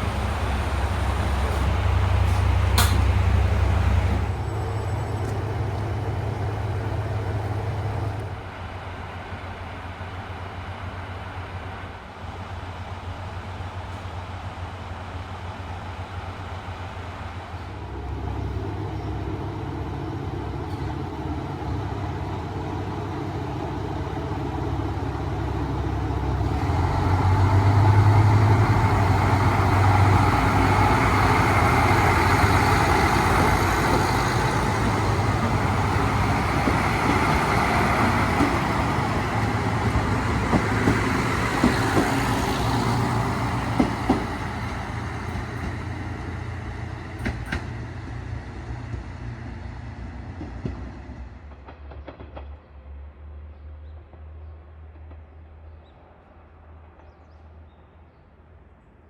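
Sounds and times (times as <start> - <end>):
diesel railcar engines humming: 0.0 - 59.0.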